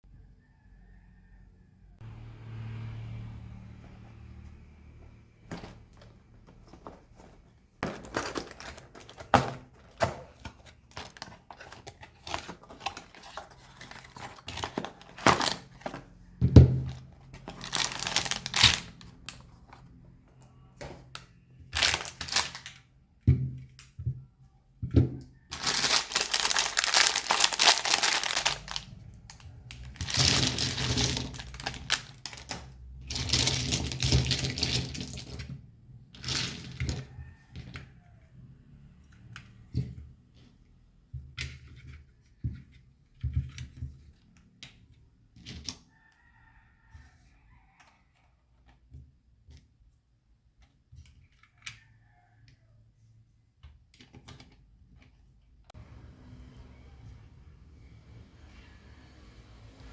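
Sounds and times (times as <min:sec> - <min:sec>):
plastic and cardboard crinkling: 0:05.5 - 0:19.9, 0:20.8 - 0:22.9, 0:25.1 - 0:35.5.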